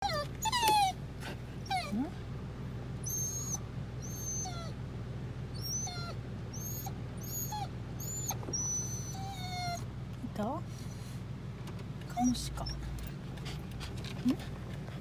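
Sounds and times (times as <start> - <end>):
dog whimpering: 0.0 - 1.0, 1.6 - 2.2, 3.0 - 4.8, 5.6 - 9.9, 12.1 - 13.6.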